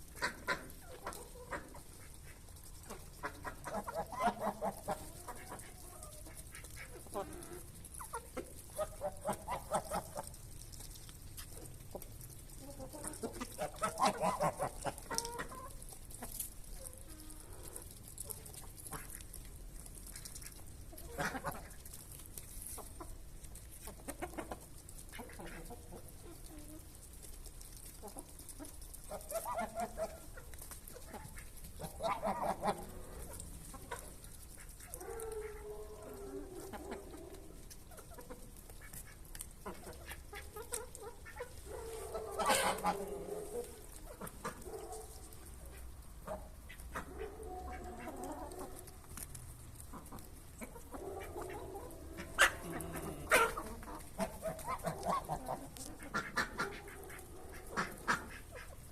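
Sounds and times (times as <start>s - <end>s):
chickens clucking: 0.0s - 58.9s
chicken drawn-out low call: 51.1s - 53.7s.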